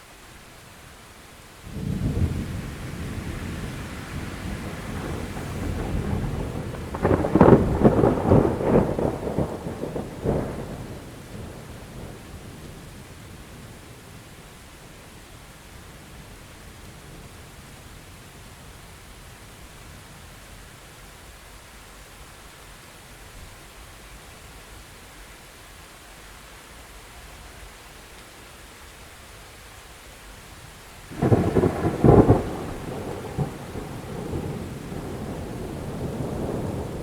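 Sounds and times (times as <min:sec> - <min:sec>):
rain hissing: 0:00.0 - 0:37.0
thunder cracking and rumbling: 0:01.7 - 0:14.1, 0:31.1 - 0:37.0.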